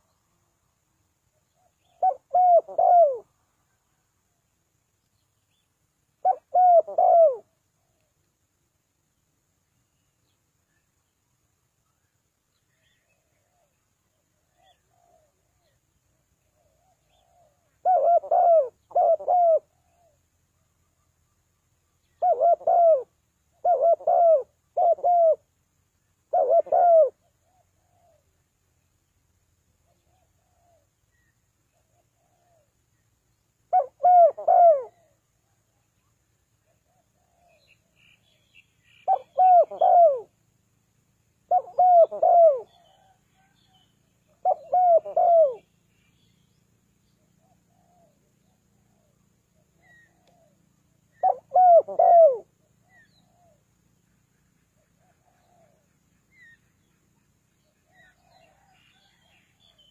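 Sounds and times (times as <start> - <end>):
dove cooing: 1.6 - 3.3, 6.2 - 8.0, 16.5 - 20.2, 22.2 - 25.5, 26.3 - 28.2, 29.9 - 30.9, 31.8 - 32.7, 33.7 - 35.2, 39.0 - 40.3, 41.5 - 43.6, 44.3 - 45.7, 47.4 - 53.6, 55.0 - 55.8, 57.9 - 59.8.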